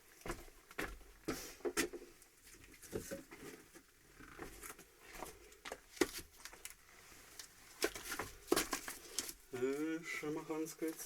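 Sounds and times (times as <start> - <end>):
wooden logs knocking and scraping: 1.7 - 6.7, 7.8 - 9.8.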